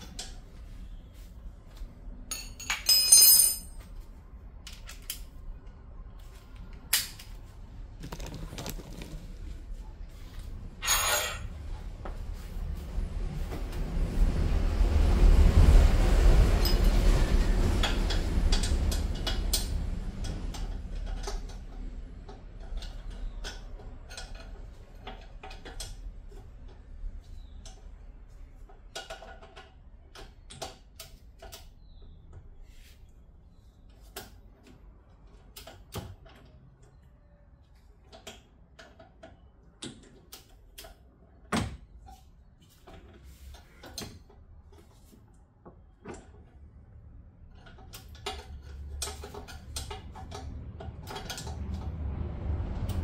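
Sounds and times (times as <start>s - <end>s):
hand tools clinking and knocking: 2.3s - 3.9s.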